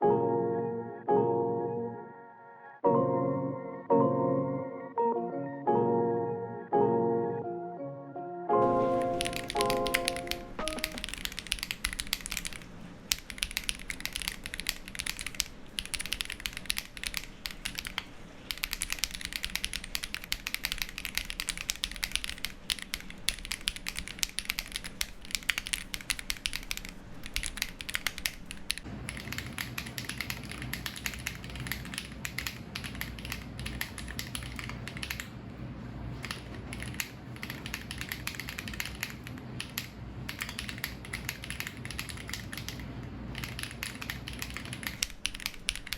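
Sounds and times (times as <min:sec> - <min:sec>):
mechanical keyboard typing: 0:08.8 - 0:35.4, 0:36.1 - 0:45.9.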